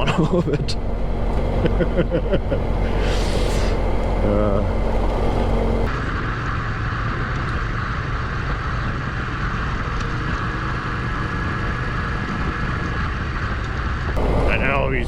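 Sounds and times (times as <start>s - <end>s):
motorcycle engine drone: 0.0s - 15.0s
wind rush: 2.6s - 6.2s.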